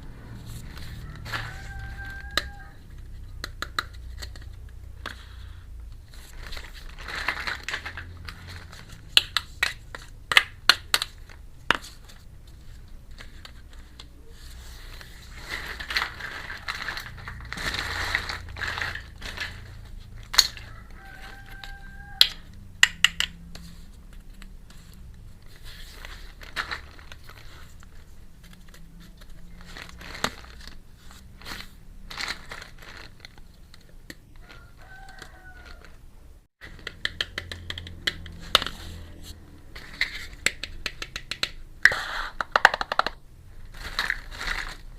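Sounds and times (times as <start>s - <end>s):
plastic packaging crinkling and tearing: 0.4s - 2.8s, 6.0s - 22.3s, 23.5s - 36.0s, 43.0s - 44.9s
plastic toy pieces clicking: 42.4s - 43.2s.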